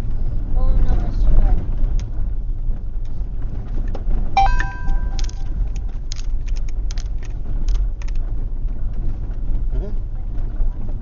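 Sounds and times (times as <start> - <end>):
vehicle rumbling over rough ground: 0.0 - 11.0
ringing chime: 4.4 - 5.7.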